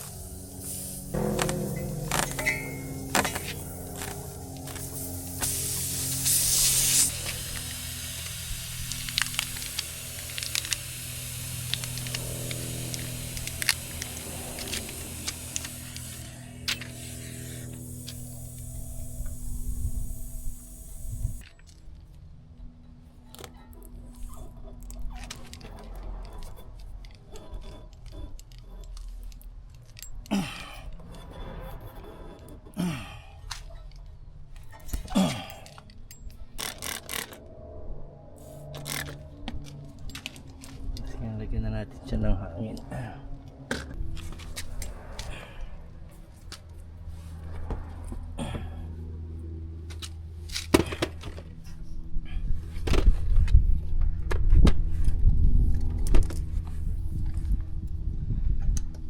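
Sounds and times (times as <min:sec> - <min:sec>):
hand tools clicking and rattling: 0:00.0 - 0:19.4, 0:21.3 - 0:31.3, 0:32.3 - 0:37.4
steady low hum: 0:00.0 - 0:59.0
air inflator motor pumping: 0:04.0 - 0:21.4
person exhaling with effort: 0:30.3 - 0:30.9, 0:32.8 - 0:33.5, 0:35.0 - 0:35.9, 0:48.4 - 0:49.0.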